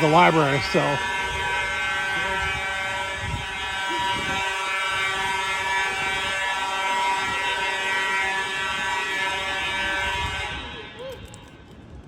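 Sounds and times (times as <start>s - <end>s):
fire alarm horns buzzing: 0.0s - 11.6s.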